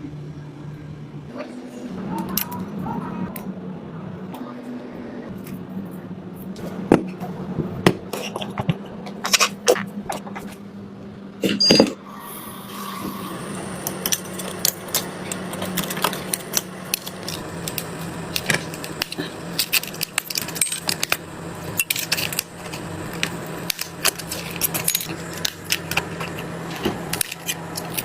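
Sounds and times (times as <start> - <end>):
small tools clicking and tapping: 14.0 - 28.0.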